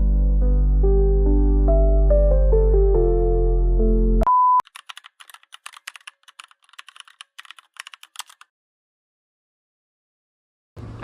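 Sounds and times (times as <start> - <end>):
short beep: 4.2 - 4.6
computer keyboard typing: 4.6 - 8.5.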